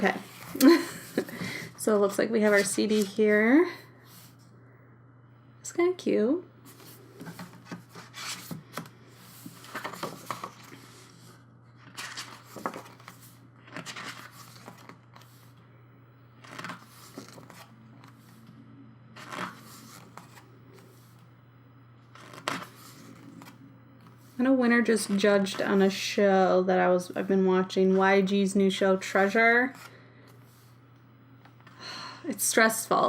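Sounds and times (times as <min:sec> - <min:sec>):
steady low hum: 0:00.0 - 0:33.0
packaging rustling and scraping: 0:16.4 - 0:18.4.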